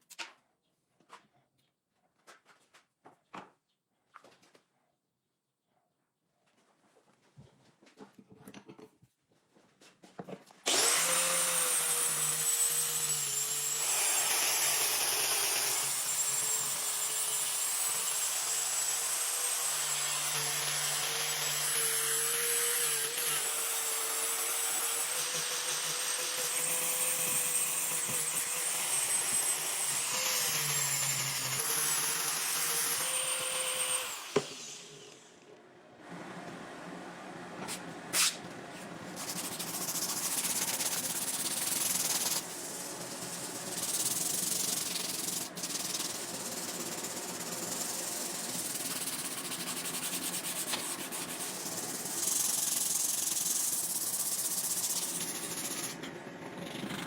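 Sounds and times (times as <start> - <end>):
grinding of metal blade: 39.2 - 57.0.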